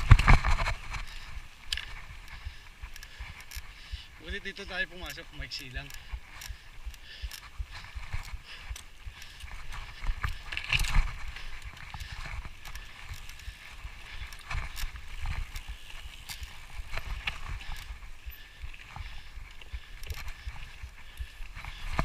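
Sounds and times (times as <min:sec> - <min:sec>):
wind rumble on microphone: 0:00.0 - 0:04.2
bike rattling over rough trail: 0:00.0 - 0:22.0.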